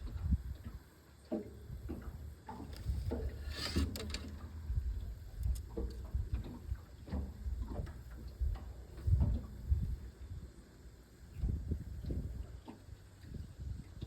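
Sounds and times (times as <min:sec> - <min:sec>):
fishing line rustling: 0:02.5 - 0:04.7.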